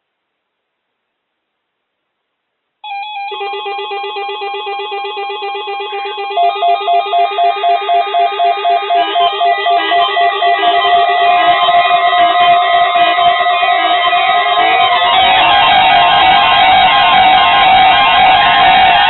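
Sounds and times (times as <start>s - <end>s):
loud pulsing beep: 4.3s - 19.0s
weather radio alarm beeps: 5.4s - 19.0s.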